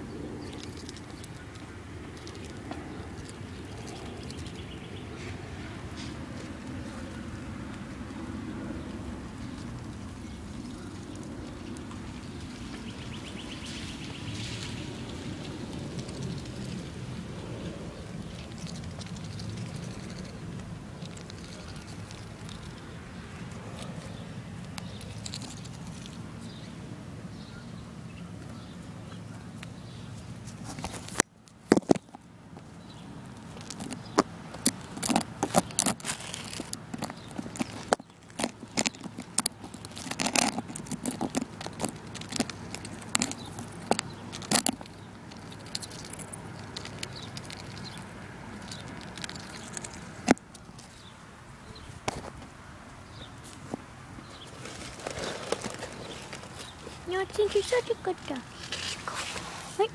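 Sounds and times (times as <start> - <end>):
steady low rumble: 0.0 - 31.1
duck pecking crackers: 0.2 - 26.6, 30.3 - 51.1, 53.4 - 59.6.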